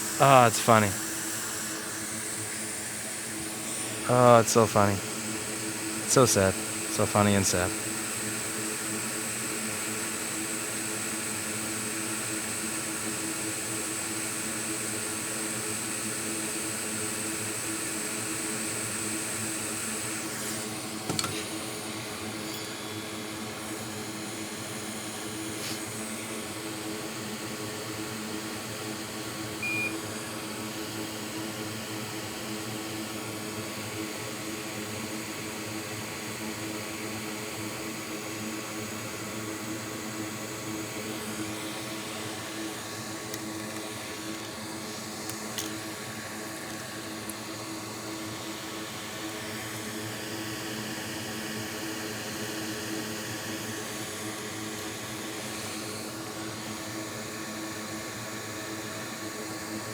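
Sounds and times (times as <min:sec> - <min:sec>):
short beep: 0:29.6 - 0:30.0.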